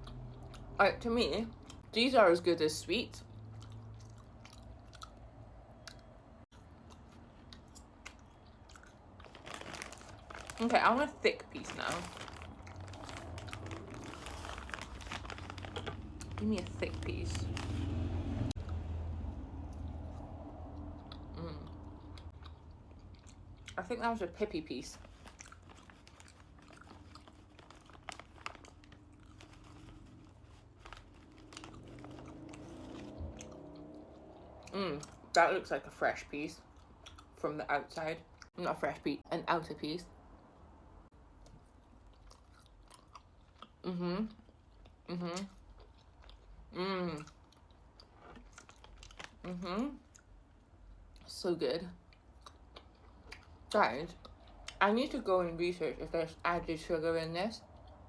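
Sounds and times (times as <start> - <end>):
person chewing: 0.0 - 0.8, 3.3 - 10.6, 12.1 - 16.4, 19.7 - 23.8, 25.0 - 35.3, 36.6 - 37.4, 41.4 - 51.2, 52.0 - 54.8.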